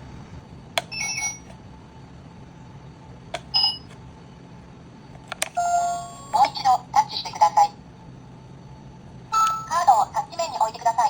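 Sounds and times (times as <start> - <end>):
card reader click: 0.8 - 1.6, 3.4 - 4.0.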